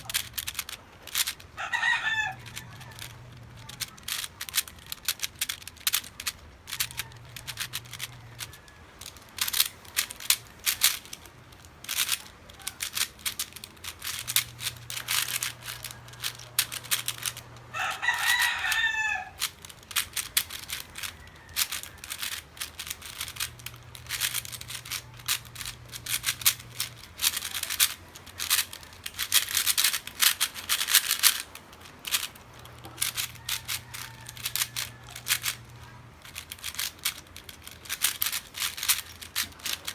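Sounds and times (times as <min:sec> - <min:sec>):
rapid clicking and clacking: 0:00.0 - 0:01.6, 0:02.3 - 0:39.9
rooster crowing: 0:01.1 - 0:04.1, 0:06.6 - 0:09.1, 0:14.8 - 0:19.5, 0:20.6 - 0:22.9, 0:32.5 - 0:36.1.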